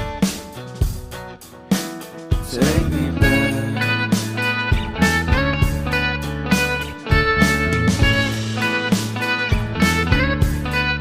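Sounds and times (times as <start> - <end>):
regular drum hits: 0.0 - 10.6
bass: 0.0 - 11.0
guitar: 0.0 - 11.0
instrumental pop music: 0.0 - 11.0
person singing: 2.4 - 4.5.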